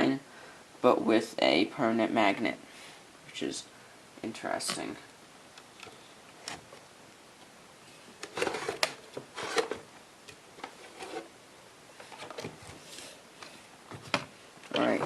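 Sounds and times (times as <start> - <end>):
objects rubbing and scraping: 8.3 - 9.8, 10.6 - 11.4.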